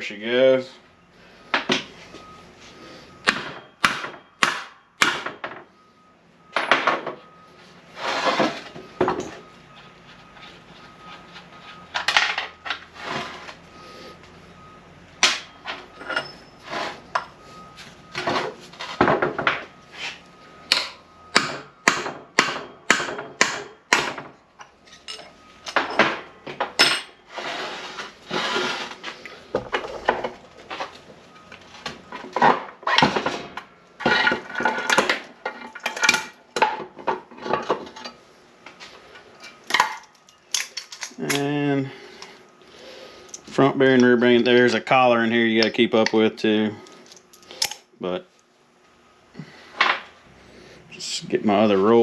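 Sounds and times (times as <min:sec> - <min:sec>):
metal parts rattling and scraping: 0:07.9 - 0:13.8, 0:15.4 - 0:20.2, 0:24.5 - 0:41.6, 0:46.8 - 0:47.9.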